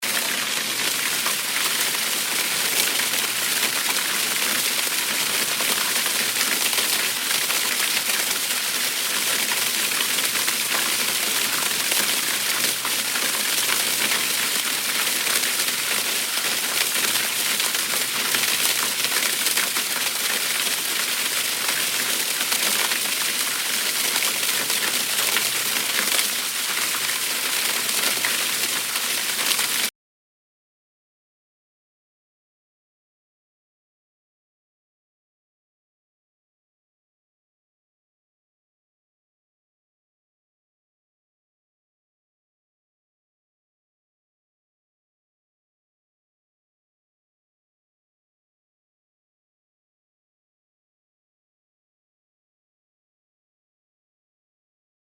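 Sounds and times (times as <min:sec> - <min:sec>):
water rushing down spillway: 0:00.0 - 0:29.9.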